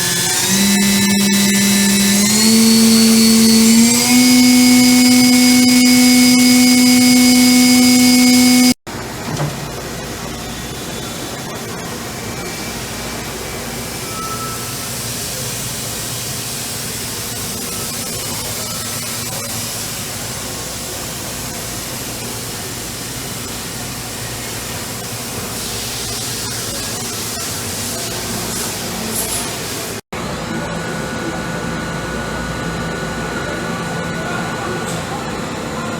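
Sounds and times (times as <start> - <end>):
machine spindle whine: 0.0 - 8.8
machine running noise: 0.0 - 13.6.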